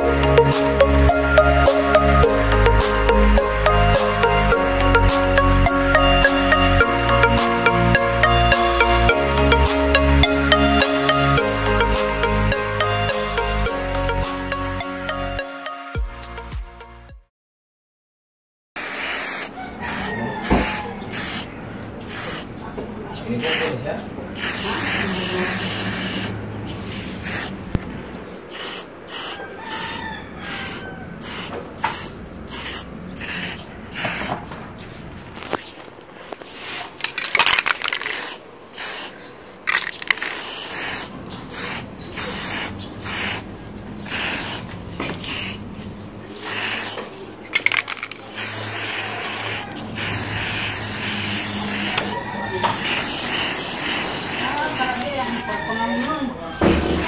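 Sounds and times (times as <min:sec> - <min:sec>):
hissing spray bursts: 0:18.8 - 0:22.5, 0:23.4 - 0:23.8, 0:24.4 - 0:27.8, 0:28.4 - 0:34.5, 0:36.4 - 0:45.6, 0:46.3 - 0:55.4, 0:56.7 - 0:57.0.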